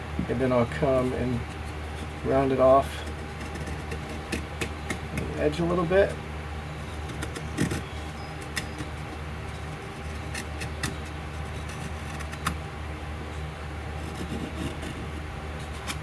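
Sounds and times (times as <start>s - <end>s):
steady low machine hum: 0.0s - 16.0s
knife cutting and scraping wood: 2.9s - 6.2s, 6.8s - 12.6s, 14.0s - 16.0s.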